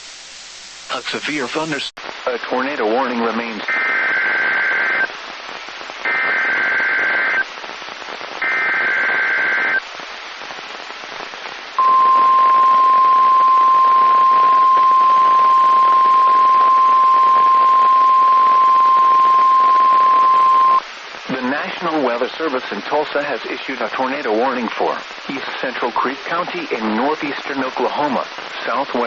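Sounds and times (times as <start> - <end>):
radio static: 0.0 - 29.0
steady alarm tone: 11.8 - 20.8.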